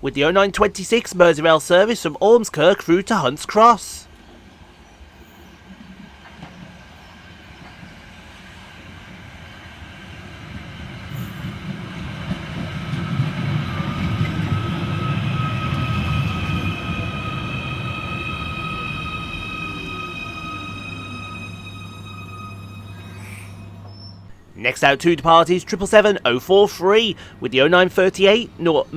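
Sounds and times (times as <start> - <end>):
electric train rumble: 0.0 - 28.9
high-pitched whine: 13.6 - 26.3.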